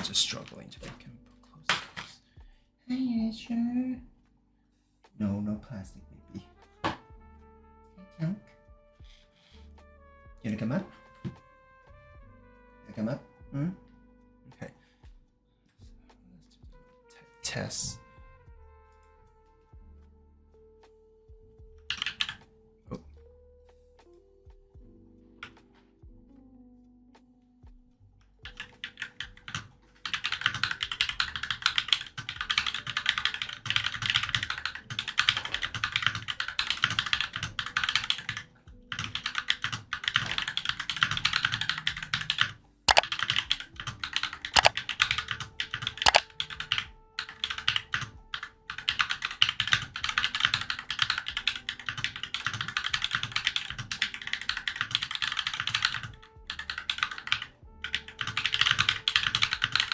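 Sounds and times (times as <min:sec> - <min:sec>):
typing on mechanical keyboard: 0:21.9 - 0:22.4, 0:28.5 - 0:59.9.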